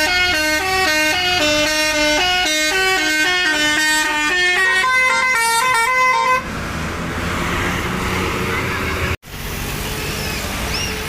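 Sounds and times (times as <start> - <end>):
bus musical horn playing tune: 0.0 - 6.5.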